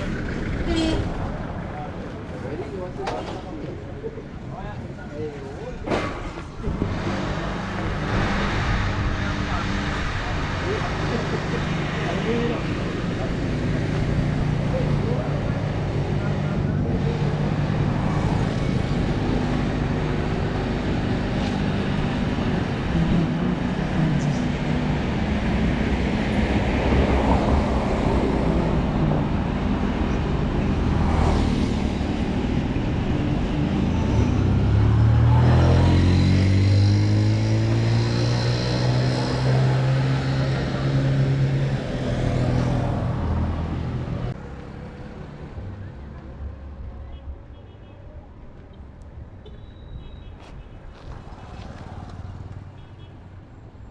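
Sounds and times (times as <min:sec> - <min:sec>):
road traffic: 0:00.0 - 0:53.9
engine speeding up: 0:30.8 - 0:44.4.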